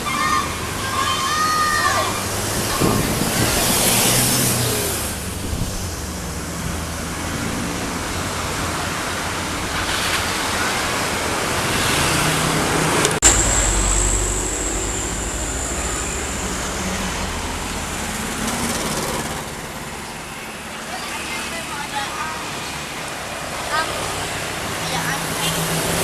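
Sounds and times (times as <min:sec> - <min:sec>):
road traffic passing: 0:00.0 - 0:26.0
heavy low rumble: 0:12.6 - 0:20.1
sharp crack: 0:13.0 - 0:19.4
thin high tone: 0:13.2 - 0:20.6.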